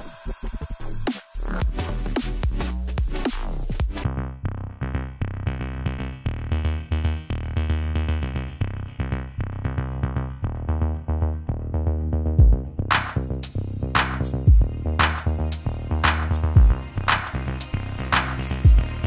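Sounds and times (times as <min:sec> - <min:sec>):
drum-machine beat: 0:00.0 - 0:04.0, 0:12.4 - 0:19.0
electronic music: 0:00.0 - 0:19.0
synthesizer chords: 0:00.0 - 0:19.0.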